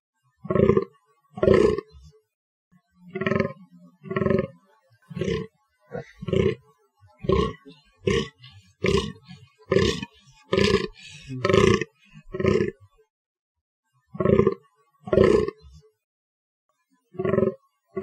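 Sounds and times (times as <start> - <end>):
deer groaning: 5.2 - 6.6, 7.3 - 12.8.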